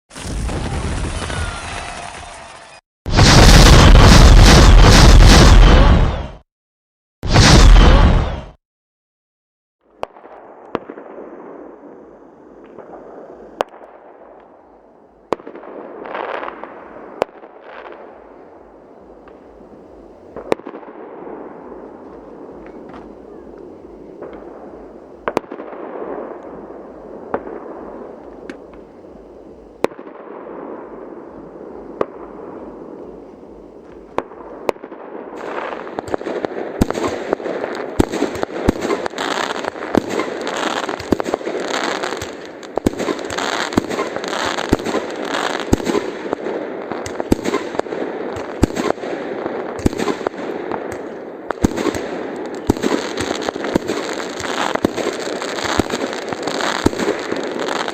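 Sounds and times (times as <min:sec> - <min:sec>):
fireworks crackling: 0:00.1 - 0:05.7, 0:24.2 - 0:57.9
fireworks bangs: 0:00.1 - 0:06.4, 0:07.2 - 0:08.6, 0:15.3 - 0:57.9.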